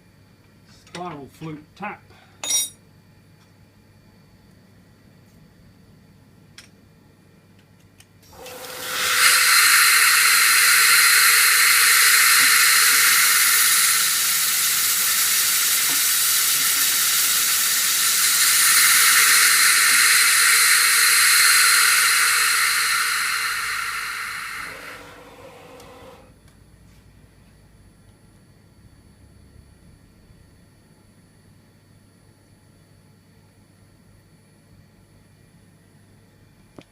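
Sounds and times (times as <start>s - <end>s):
milling machine hiss: 8.3s - 26.3s.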